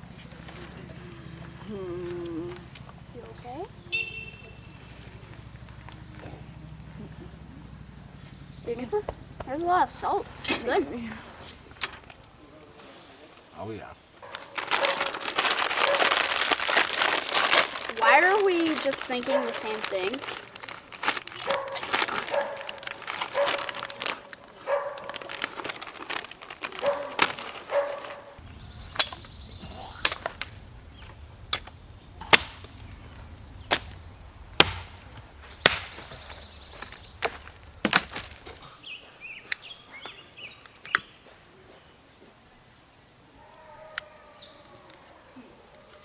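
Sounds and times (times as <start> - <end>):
axe chopping firewood: 28.9 - 32.9, 33.6 - 38.6.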